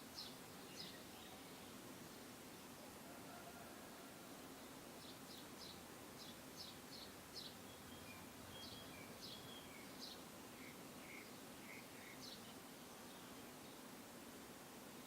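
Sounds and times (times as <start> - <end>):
steady hiss: 0.0 - 15.0
bird chirping: 0.1 - 1.7, 5.0 - 13.8.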